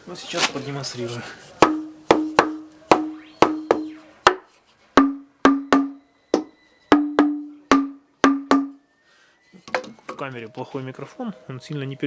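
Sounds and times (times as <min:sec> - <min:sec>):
wooden mallet striking wooden beams: 0:01.6 - 0:08.8.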